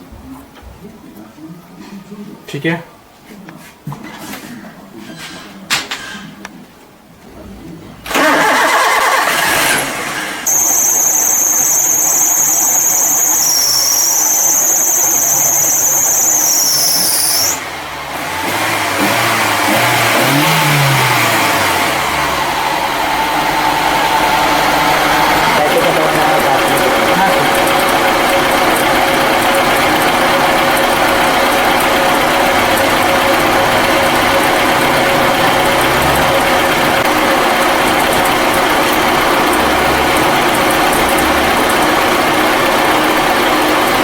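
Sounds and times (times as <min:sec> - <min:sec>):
car engine starting and running: 0:07.3 - 0:13.4, 0:14.1 - 0:44.0
high-pitched squeal: 0:10.5 - 0:17.7.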